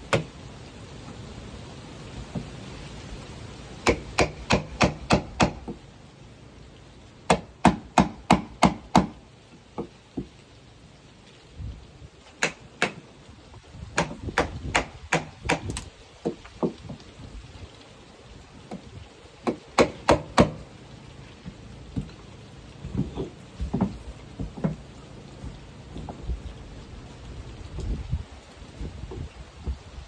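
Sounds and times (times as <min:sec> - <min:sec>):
hammer striking wood: 0:03.8 - 0:05.8, 0:07.3 - 0:09.2, 0:12.4 - 0:13.0, 0:14.0 - 0:16.8, 0:19.4 - 0:20.6.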